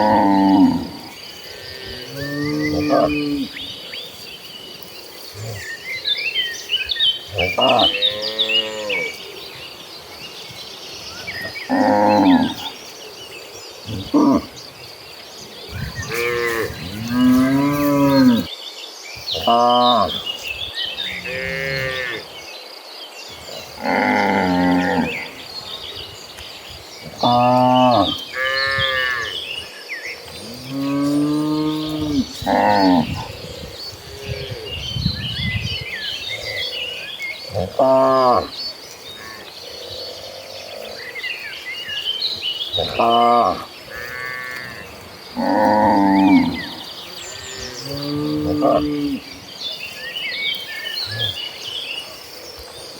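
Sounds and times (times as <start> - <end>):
cattle mooing: 0.0 - 1.0
birds chirping: 0.0 - 52.9
high insect drone: 0.0 - 52.9.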